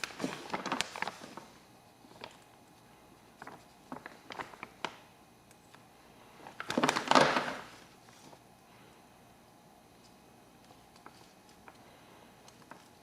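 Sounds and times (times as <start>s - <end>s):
plastic bag crinkling: 0.0s - 2.5s, 3.2s - 5.0s, 6.4s - 8.0s.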